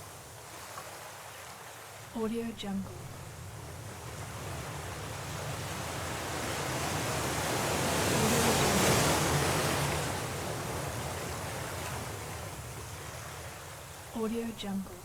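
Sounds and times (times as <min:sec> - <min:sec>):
stormy sea waves breaking: 0:02.9 - 0:15.0.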